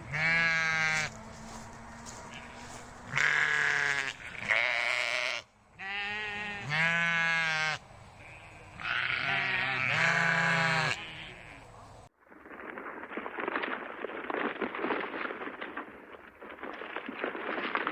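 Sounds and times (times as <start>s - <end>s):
sheep or goat bleating: 0.0s - 11.6s.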